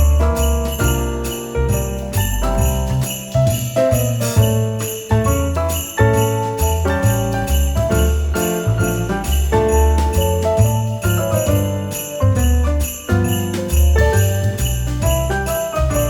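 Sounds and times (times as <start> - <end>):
christmas music with sleigh bells: 0.0 - 16.0.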